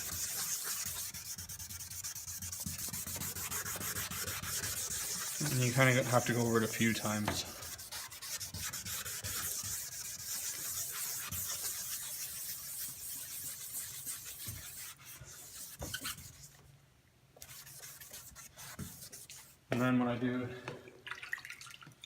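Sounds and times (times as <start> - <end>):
pad sanding plastic lens: 0.0 - 16.6.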